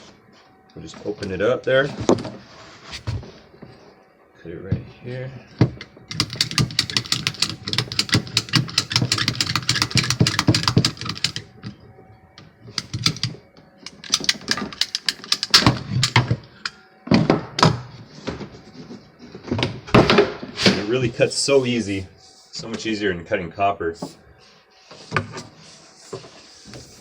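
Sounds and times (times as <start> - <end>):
clicks and knocks of handling: 5.6 - 11.8, 12.7 - 17.8
pipe cutter clicking: 12.8 - 16.8.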